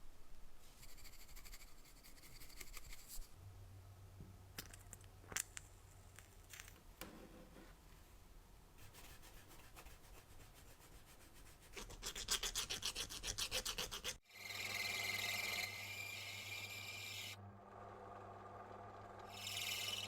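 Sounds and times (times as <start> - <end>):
rapid rubbing strokes: 8.8 - 14.3.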